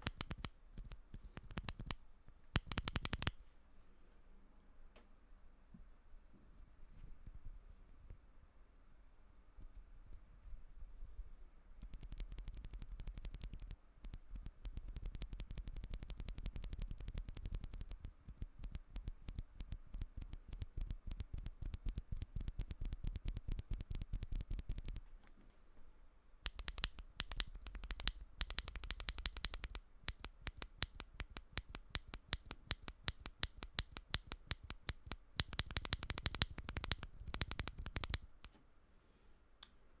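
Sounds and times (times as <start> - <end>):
mechanical keyboard typing: 0.0 - 2.0, 2.6 - 3.3, 11.8 - 25.0, 26.5 - 38.5.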